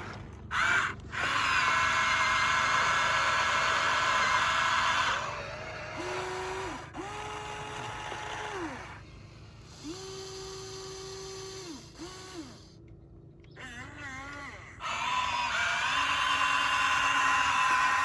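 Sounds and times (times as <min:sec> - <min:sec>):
small electric motors whining: 0:00.5 - 0:12.8, 0:14.9 - 0:18.0.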